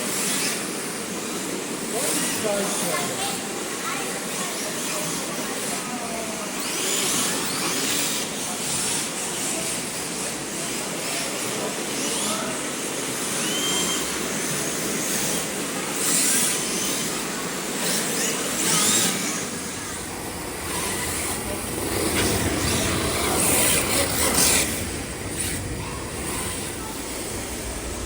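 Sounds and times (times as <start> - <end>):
electric motors whining: 16.0 - 28.0
drift tyres hissing: 18.8 - 28.0.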